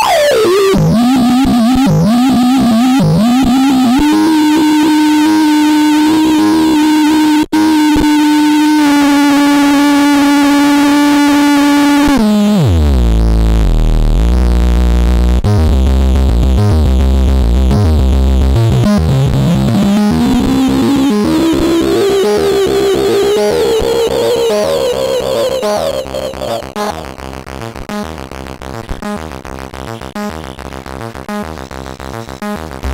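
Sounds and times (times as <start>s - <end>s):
distorted buzzy synthesizer tone: 0.0s - 32.9s.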